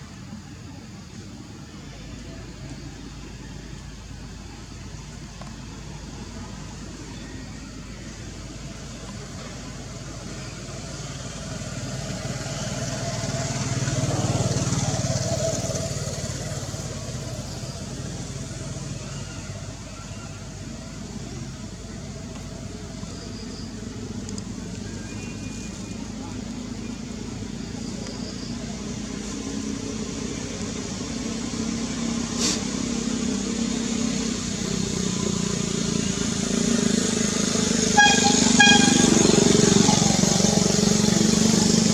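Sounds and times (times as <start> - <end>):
vehicle engine pulsing: 0.3 - 41.9
brief high hiss: 32.3 - 32.8.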